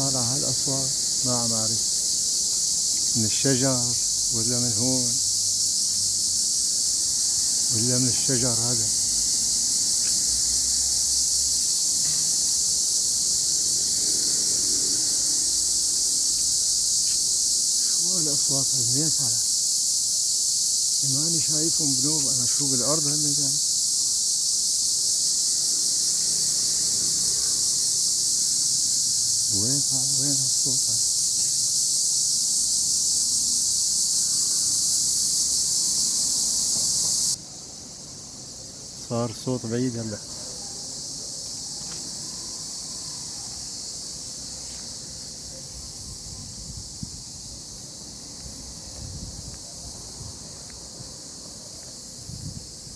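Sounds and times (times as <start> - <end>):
cicadas buzzing chorus: 0.0 - 52.9
distant cicada chorus: 0.0 - 52.9
insects singing: 0.0 - 52.9.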